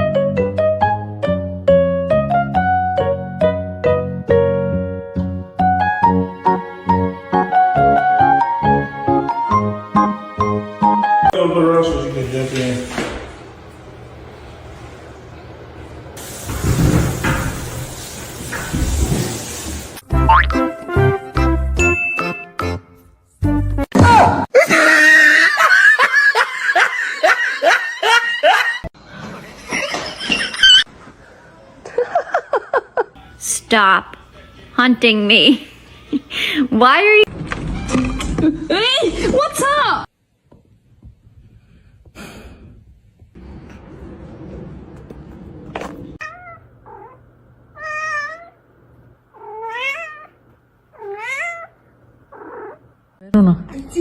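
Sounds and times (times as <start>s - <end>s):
person laughing hard: 24.5s - 28.9s
cat meowing: 46.2s - 48.6s, 49.3s - 52.8s.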